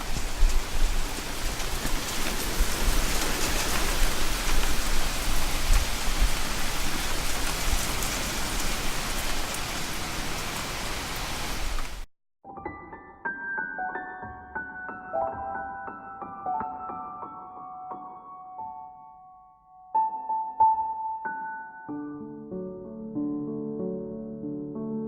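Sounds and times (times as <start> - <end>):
steady rain pattering: 0.0 - 12.1.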